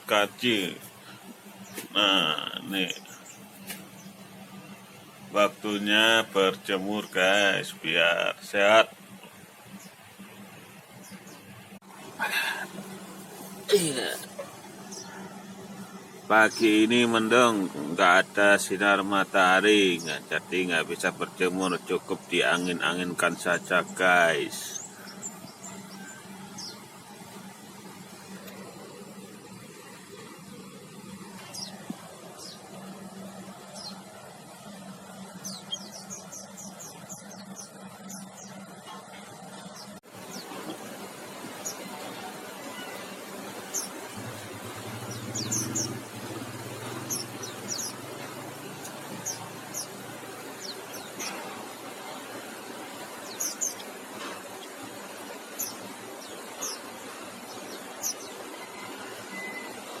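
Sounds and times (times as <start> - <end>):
background hiss: 0.0 - 38.5, 40.0 - 60.0
small birds chirping: 0.0 - 60.0
small bird chirping: 31.3 - 32.7, 33.6 - 34.1, 35.1 - 40.7, 42.6 - 59.8.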